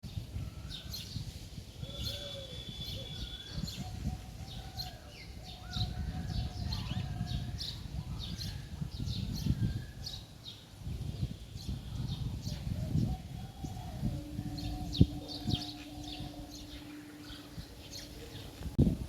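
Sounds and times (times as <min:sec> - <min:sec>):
birds chirping and calling: 0:01.8 - 0:10.2, 0:11.6 - 0:18.8
low irregular rumble: 0:13.1 - 0:19.0.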